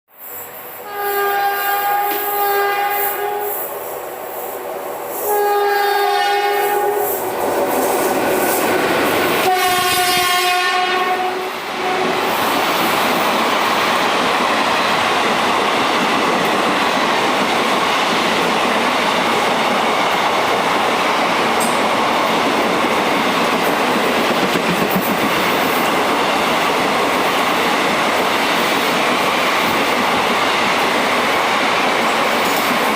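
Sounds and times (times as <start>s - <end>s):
train wheels rumbling on rails: 0.2s - 32.9s
train horn blasts: 0.7s - 3.7s, 5.2s - 7.2s, 9.4s - 12.4s.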